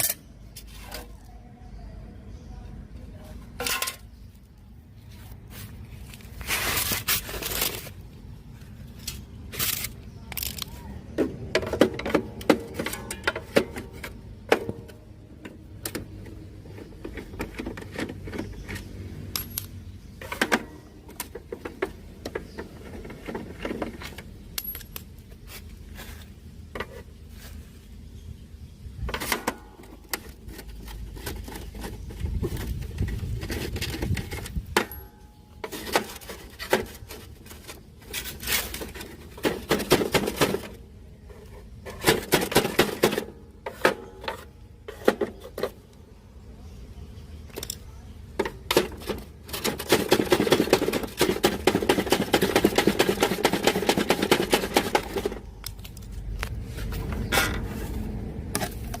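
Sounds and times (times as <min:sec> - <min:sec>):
clicks and scraping of plastic parts: 0:05.2 - 0:27.6, 0:29.0 - 0:46.1, 0:47.5 - 0:59.0.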